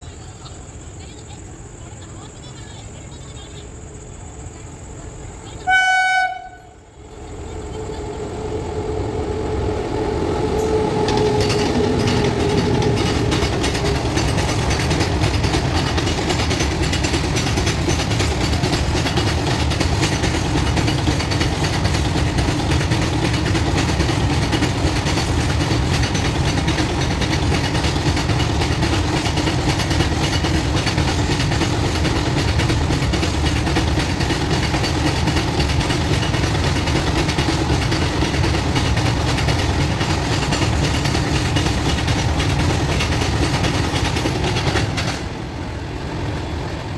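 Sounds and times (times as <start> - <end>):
rumble of passing wagons: 0.0 - 46.9
wheels clattering on track: 4.9 - 46.9
train horn blast: 5.6 - 6.9.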